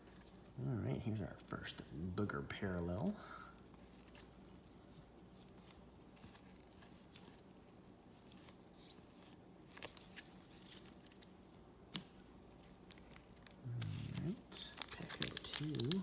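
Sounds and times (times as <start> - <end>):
trading cards handled clicking: 12.9 - 16.0.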